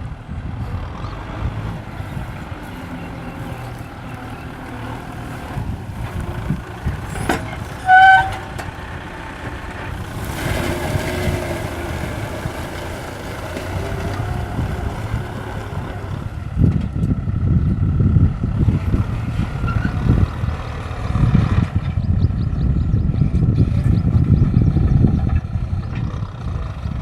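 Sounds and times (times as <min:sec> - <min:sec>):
tractor diesel engine running: 0:00.0 - 0:27.0
high horn-like tone: 0:07.8 - 0:08.5.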